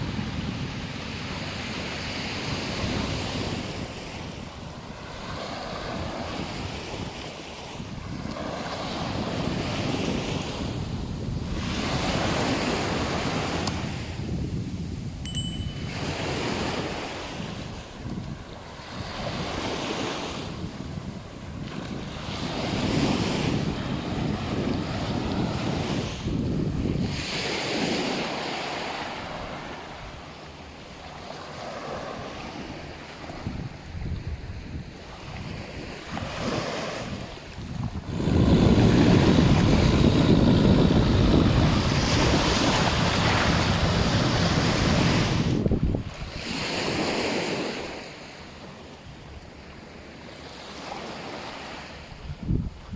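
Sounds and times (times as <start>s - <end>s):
wind buffeting microphone: 0.0s - 30.3s, 32.2s - 47.9s, 52.1s - 52.9s
sea waves washing onto beach: 15.6s - 30.3s, 35.1s - 48.2s.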